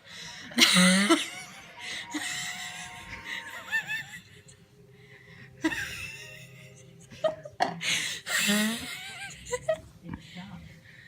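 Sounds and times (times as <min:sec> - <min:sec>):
girl laughing with squeaky wheezes: 0:00.4 - 0:04.6, 0:05.6 - 0:09.8.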